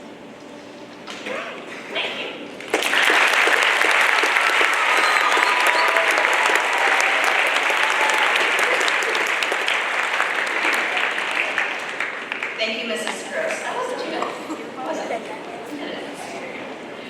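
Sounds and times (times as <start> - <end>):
crowd applauding: 2.6 - 15.5.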